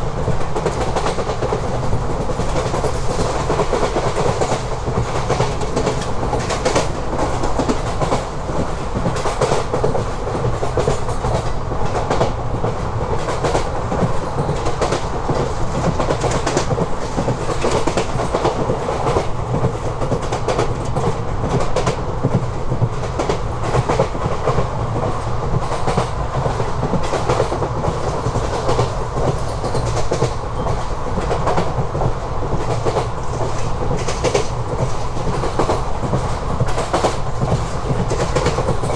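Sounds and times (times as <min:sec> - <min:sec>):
train wheels rumbling on rails: 0:00.0 - 0:38.9
wheels clicking over rail joints: 0:00.2 - 0:38.9.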